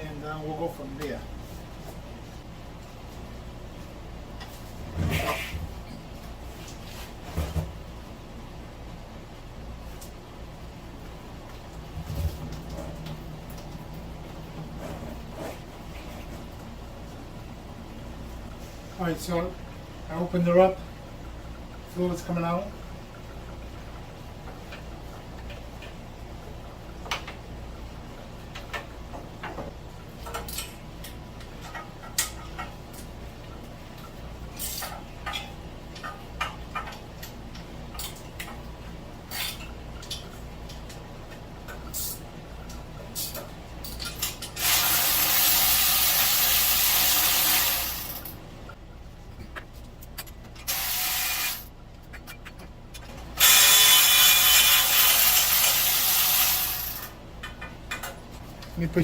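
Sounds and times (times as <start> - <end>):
power tool running in bursts: 50.7 - 51.7, 53.4 - 57.1.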